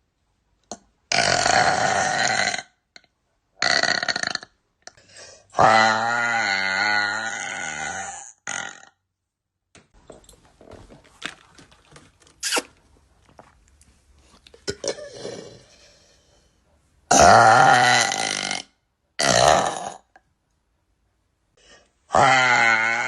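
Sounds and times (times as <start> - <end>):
woman burping: 14.7 - 15.6, 17.1 - 20.2.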